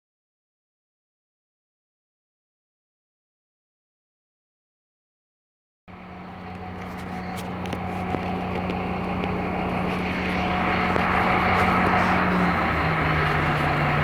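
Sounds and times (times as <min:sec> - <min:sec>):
bus engine running: 0:05.9 - 0:14.0.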